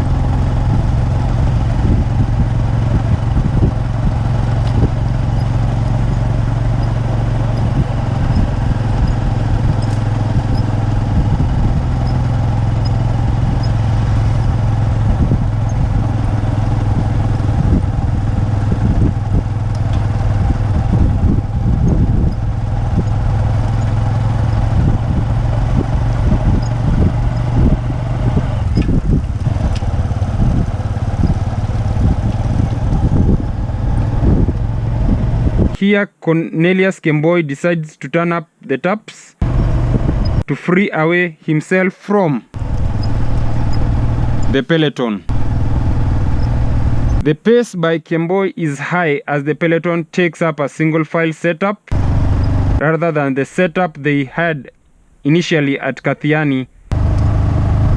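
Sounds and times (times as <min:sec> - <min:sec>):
vehicle engine running: 0:00.0 - 0:35.8, 0:39.4 - 0:40.5, 0:42.6 - 0:44.7, 0:45.3 - 0:47.2, 0:51.9 - 0:52.8, 0:56.9 - 0:57.9.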